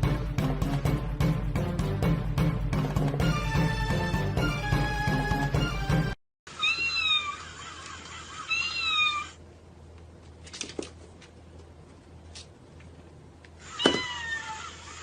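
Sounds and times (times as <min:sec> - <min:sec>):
music: 0:00.0 - 0:06.2
cat meowing: 0:06.6 - 0:07.5, 0:08.5 - 0:09.4, 0:13.7 - 0:14.8.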